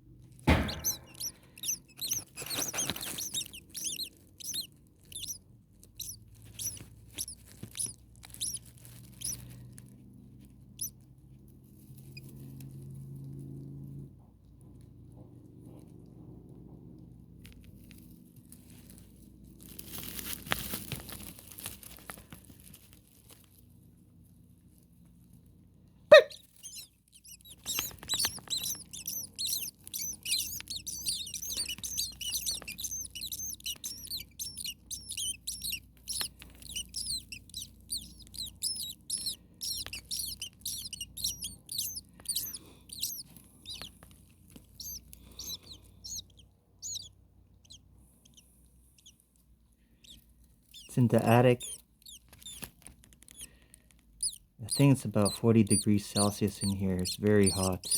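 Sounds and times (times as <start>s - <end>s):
starlings chirping: 0.5s - 5.4s, 6.0s - 9.5s, 26.1s - 43.9s, 44.8s - 47.8s, 50.0s - 52.6s, 54.2s - 57.9s.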